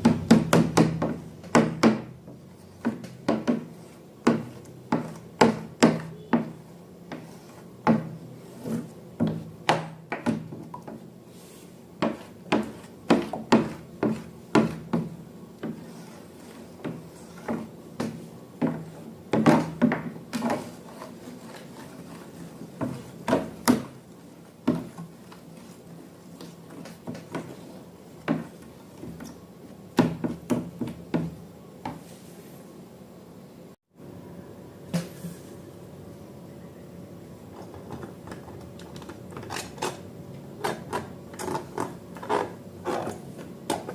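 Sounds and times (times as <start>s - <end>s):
knocks and rubbing of handled objects: 0.0s - 32.5s.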